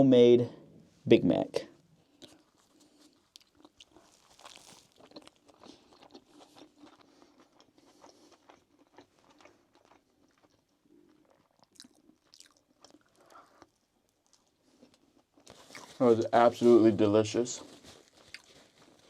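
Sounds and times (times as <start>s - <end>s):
soft crunches of chewing: 2.0s - 16.7s, 17.6s - 19.0s.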